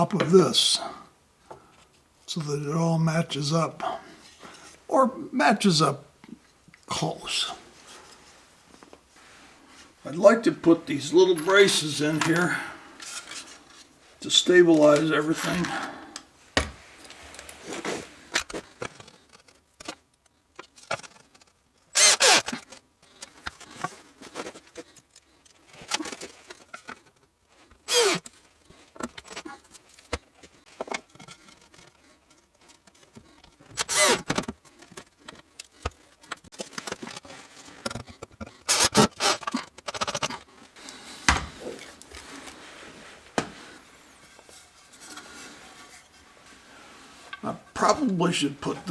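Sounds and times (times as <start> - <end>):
wooden blocks and tools handled: 10.8 - 48.9
cordless drill running: 22.0 - 22.5, 27.9 - 28.2, 33.8 - 34.2, 38.7 - 39.4.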